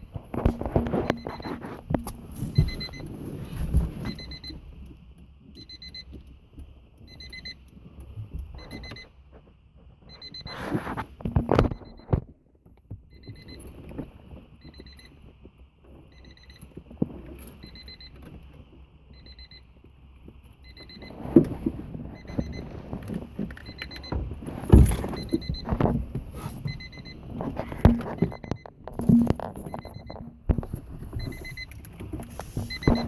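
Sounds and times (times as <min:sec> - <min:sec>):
knocks and handling noise: 0:00.0 - 0:19.2, 0:19.8 - 0:33.0
car warning chime beeping: 0:00.4 - 0:03.1, 0:04.0 - 0:04.9, 0:05.5 - 0:06.3, 0:07.0 - 0:07.8, 0:08.4 - 0:09.1, 0:10.1 - 0:10.6, 0:17.5 - 0:18.3, 0:19.1 - 0:19.8, 0:20.6 - 0:33.0.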